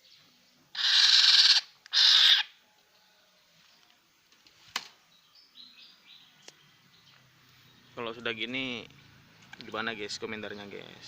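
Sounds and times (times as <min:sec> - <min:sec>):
bird screech calls: 0:00.8 - 0:02.6.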